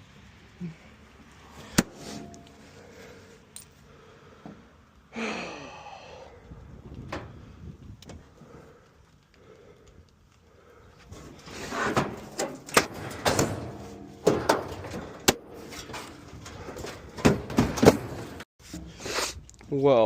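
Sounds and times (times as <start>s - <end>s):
scrap metal clanking and scraping: 1.8s - 3.7s, 11.1s - 19.2s.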